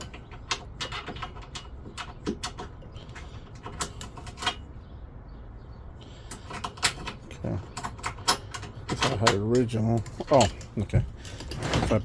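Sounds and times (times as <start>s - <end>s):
plastic parts clicking and knocking: 0.0s - 4.6s.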